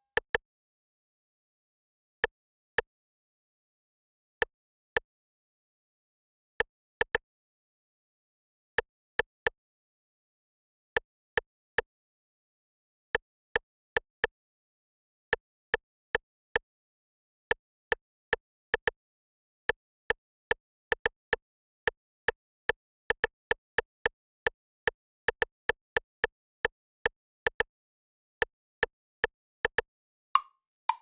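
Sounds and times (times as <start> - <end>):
dry percussive clicks in a beat: 18.3 - 19.0, 19.7 - 27.7, 28.4 - 31.0.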